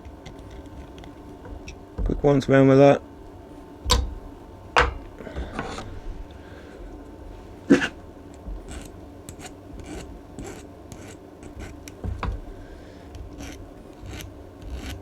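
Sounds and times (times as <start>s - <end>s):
hand file scraping metal: 7.7s - 12.5s, 13.1s - 15.0s
dull knock: 12.0s - 12.5s.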